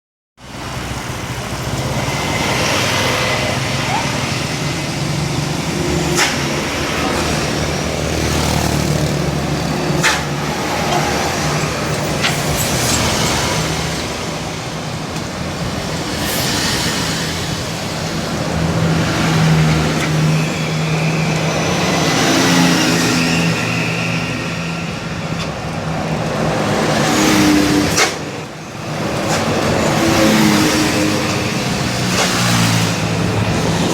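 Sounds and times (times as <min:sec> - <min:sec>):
coach diesel engines running: 0:00.4 - 0:33.9
traffic noise: 0:00.4 - 0:33.9.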